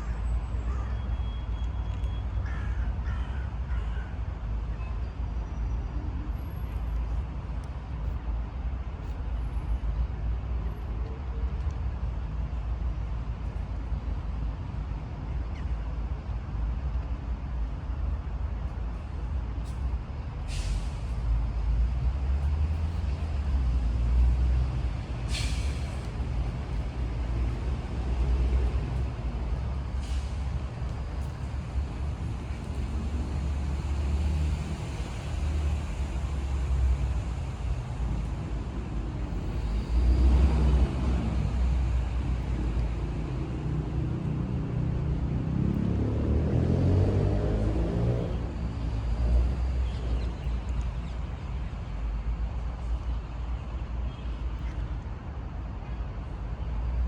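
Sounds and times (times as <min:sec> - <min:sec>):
road traffic rumble: 0:00.0 - 0:57.0
short hisses: 0:20.5 - 0:21.2, 0:25.3 - 0:26.1.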